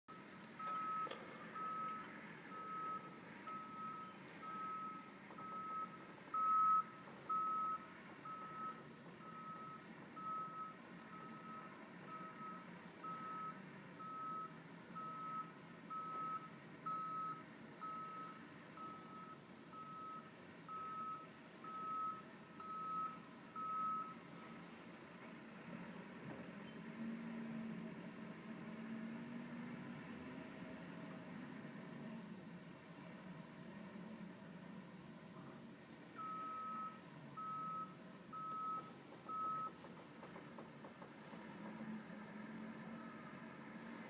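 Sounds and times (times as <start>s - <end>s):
vehicle backup alarm beeping: 0.1s - 24.8s, 36.1s - 39.8s, 42.9s - 43.6s.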